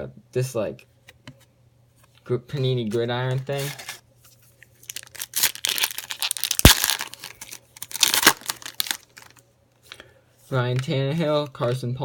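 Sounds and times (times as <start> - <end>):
wrapper tearing and crinkling: 4.8 - 9.4.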